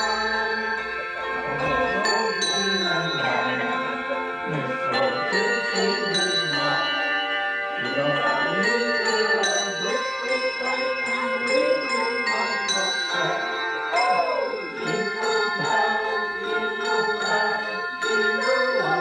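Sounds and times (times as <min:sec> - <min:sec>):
tuned bells playing a tune: 0:00.0 - 0:19.0
faint voices: 0:11.6 - 0:16.0.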